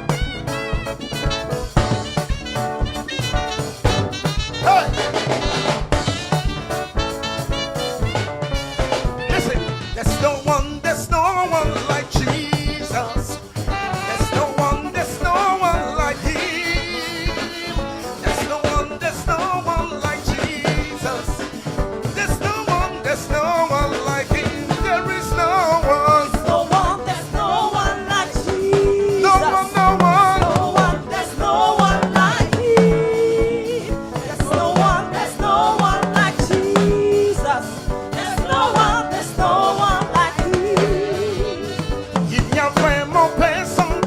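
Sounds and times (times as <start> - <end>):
bass notes: 0.0 - 44.0
drum kit steady beat: 0.0 - 44.0
gospel choir singing: 0.0 - 44.0.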